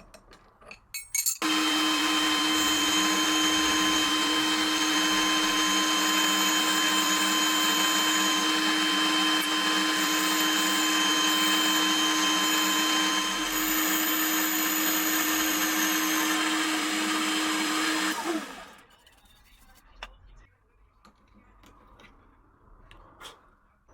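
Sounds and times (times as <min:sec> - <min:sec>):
milling machine motor whine: 0:01.4 - 0:18.8
metal cutting noise: 0:01.4 - 0:19.0.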